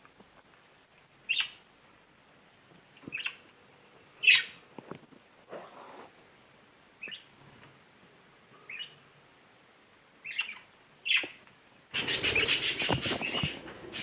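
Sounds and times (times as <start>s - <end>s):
bird chirping: 3.0s - 4.7s, 7.0s - 7.4s, 8.5s - 9.1s, 10.2s - 11.4s, 12.0s - 14.0s
bird wings fluttering: 12.0s - 14.0s.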